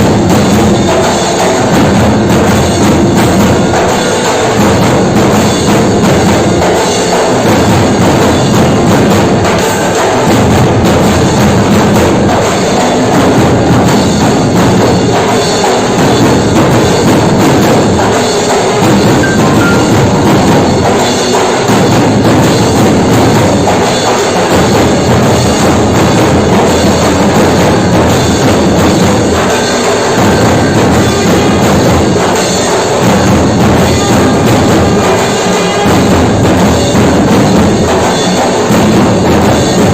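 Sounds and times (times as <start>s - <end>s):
music with drums and percussion: 0.0s - 39.9s.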